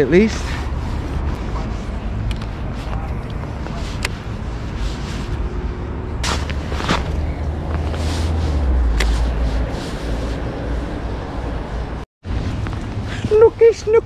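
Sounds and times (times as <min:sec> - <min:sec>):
brief swishes: 0:06.2 - 0:10.4.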